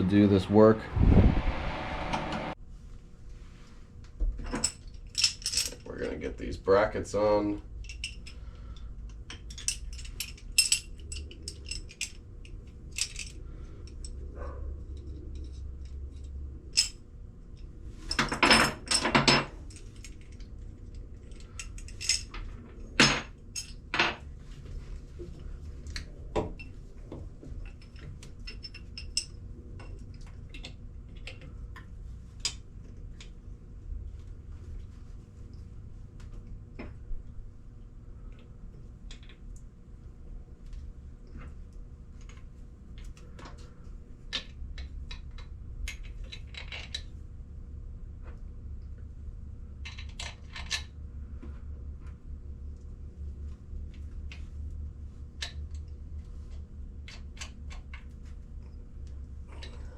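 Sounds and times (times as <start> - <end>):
low hum: 0.0 - 2.6.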